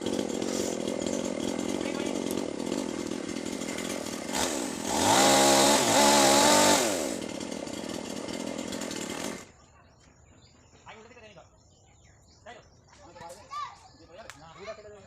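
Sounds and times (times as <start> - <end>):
chainsaw engine running: 0.0 - 9.5.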